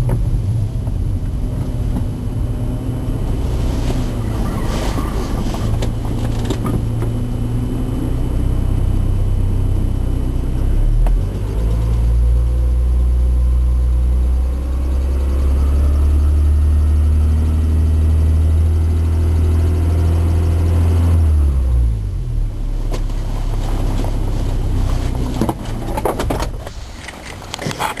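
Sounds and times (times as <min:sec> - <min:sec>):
car engine running: 0:00.0 - 0:28.0
knocks and handling noise: 0:03.6 - 0:07.2, 0:22.9 - 0:28.0.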